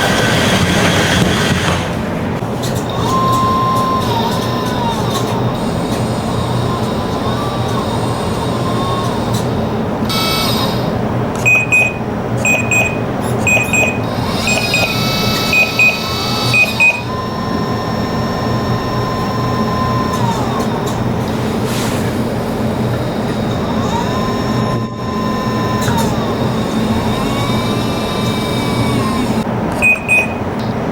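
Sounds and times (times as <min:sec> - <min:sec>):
hydraulic pump hum: 0:00.0 - 0:30.9
high electronic beeps: 0:11.4 - 0:17.1, 0:29.8 - 0:30.5.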